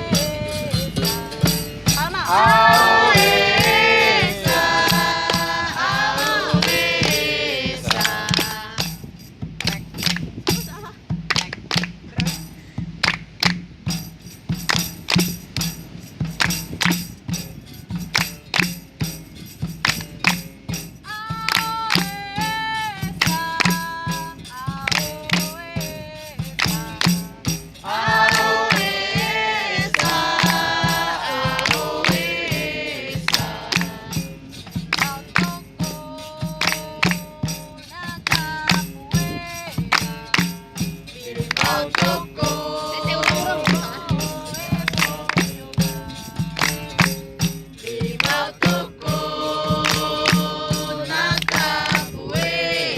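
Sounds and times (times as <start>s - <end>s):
group chorus singing: 0.0s - 8.8s, 26.6s - 37.2s, 41.2s - 46.8s, 47.8s - 52.9s
person singing: 0.0s - 8.8s, 35.1s - 46.4s
percussion: 0.0s - 52.9s
rhythmic hand-clapping: 0.0s - 52.9s.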